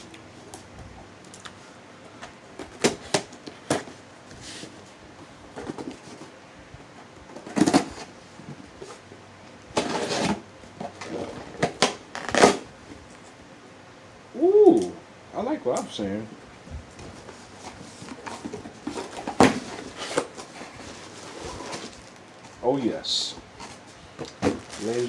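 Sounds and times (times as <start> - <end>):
cardboard rustling: 17.0 - 22.6, 23.6 - 25.0.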